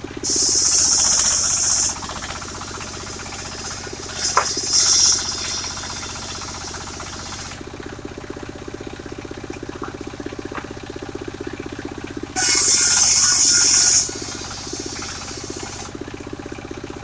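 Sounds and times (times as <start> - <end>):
sawmill engine pulsing: 0.0 - 17.0
short hiss: 0.2 - 7.6, 12.4 - 15.9.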